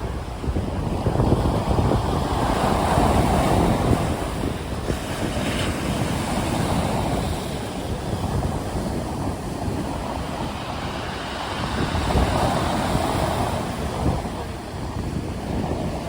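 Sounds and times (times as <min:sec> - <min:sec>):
sea waves washing in: 0:00.0 - 0:16.0
wind rumbling on microphone: 0:00.0 - 0:16.0.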